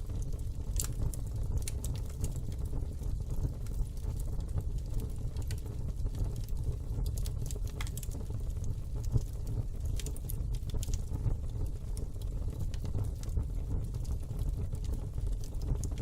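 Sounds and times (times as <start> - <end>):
fire crackling and popping: 0.0 - 16.0
low steady fire rumble: 0.0 - 16.0.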